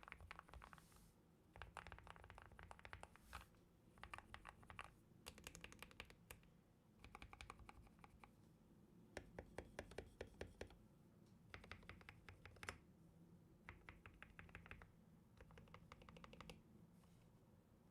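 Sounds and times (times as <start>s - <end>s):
mechanical keyboard typing: 0.0s - 0.8s, 1.6s - 6.4s, 7.0s - 8.2s, 11.6s - 12.8s, 13.7s - 16.6s.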